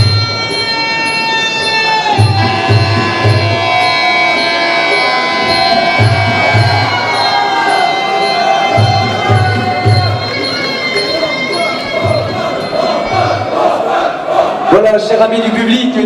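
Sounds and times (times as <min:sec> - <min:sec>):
reedy sliding melody: 0:00.0 - 0:14.0
low drum beats: 0:02.2 - 0:03.9, 0:05.3 - 0:10.4.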